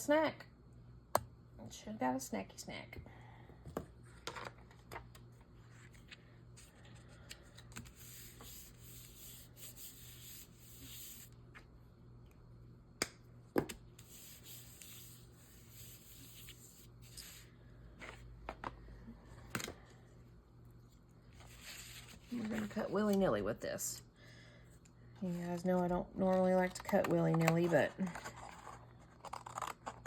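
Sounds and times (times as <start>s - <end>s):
paper rubbed by hand: 7.9s - 11.3s, 14.0s - 17.5s.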